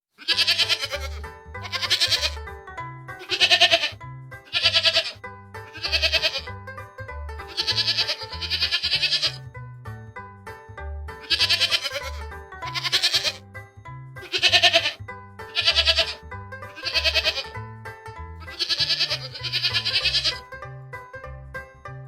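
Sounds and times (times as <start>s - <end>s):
bleat-like fluttering sound: 0.2s - 2.4s
background music with bass line: 0.3s - 22.0s.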